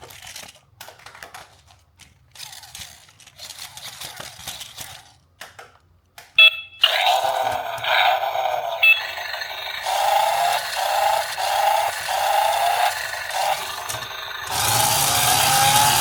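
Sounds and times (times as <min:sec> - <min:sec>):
toy short beeps: 0:06.4 - 0:12.1
pulsing synthesized toy sound: 0:06.8 - 0:16.0.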